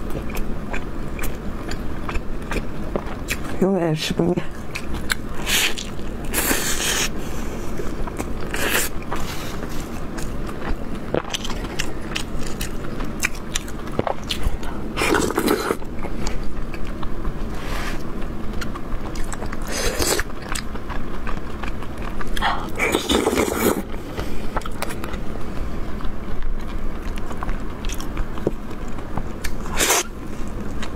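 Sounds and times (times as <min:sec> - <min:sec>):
chewing with mouth clicks: 0:00.0 - 0:03.6, 0:04.5 - 0:07.1, 0:07.7 - 0:30.9.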